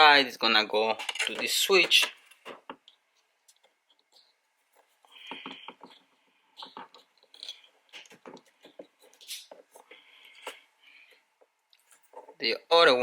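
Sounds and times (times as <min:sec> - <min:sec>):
plastic connectors clicking and rustling: 0:00.8 - 0:06.0, 0:06.6 - 0:10.6.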